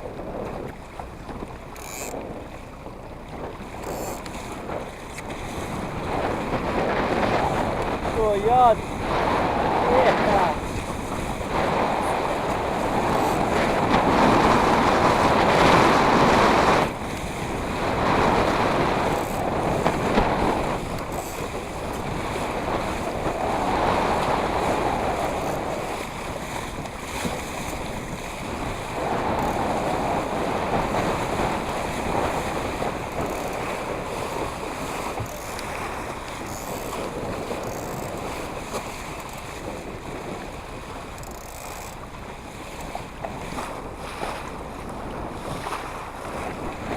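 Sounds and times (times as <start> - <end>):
sea water rushing and splashing: 0.0 - 46.9
wind buffeting microphone: 0.0 - 46.9.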